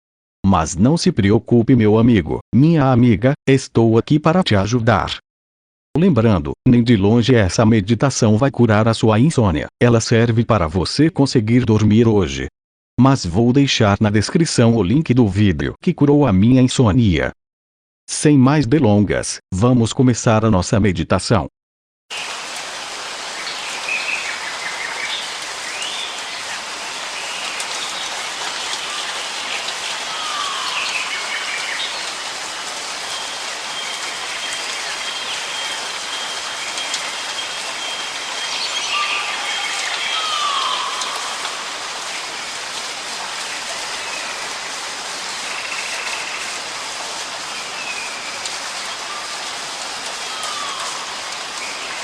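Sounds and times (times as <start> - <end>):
steady rain: 22.1 - 52.0
birds chirping: 23.3 - 46.7.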